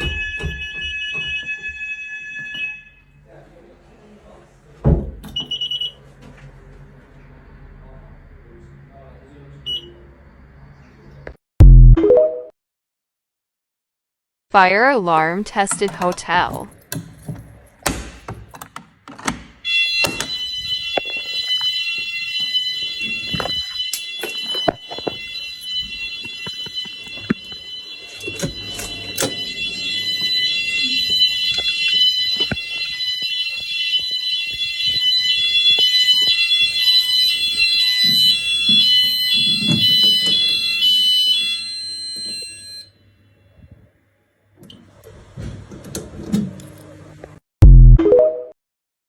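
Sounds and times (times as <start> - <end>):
fire alarm sounders: 0.0 - 3.2, 5.4 - 6.0, 9.6 - 9.9, 19.6 - 43.7.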